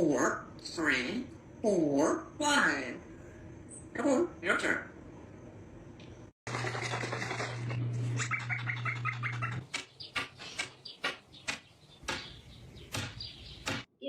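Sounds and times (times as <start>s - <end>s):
parrot chirping: 8.2s - 13.9s
sharp clicks: 8.7s - 13.9s.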